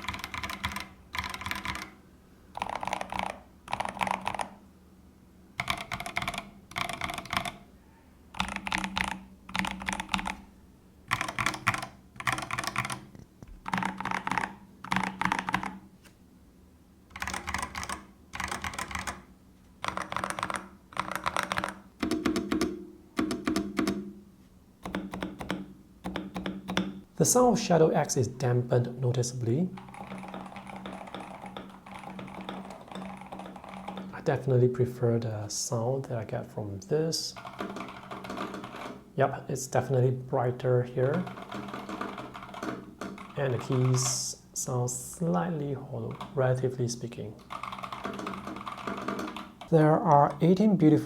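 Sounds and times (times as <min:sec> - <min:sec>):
typing on mechanical keyboard: 0:00.0 - 0:02.0, 0:02.6 - 0:04.6, 0:05.6 - 0:07.6, 0:08.4 - 0:10.4, 0:11.1 - 0:15.8, 0:17.1 - 0:24.0, 0:24.8 - 0:26.9, 0:29.8 - 0:34.2, 0:37.4 - 0:39.0, 0:41.0 - 0:44.2, 0:46.0 - 0:46.4, 0:47.4 - 0:50.4.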